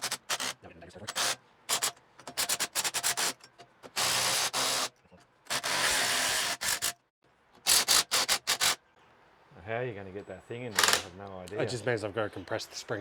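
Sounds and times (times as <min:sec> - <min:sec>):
sharp tool clicks: 0:10.7 - 0:11.1.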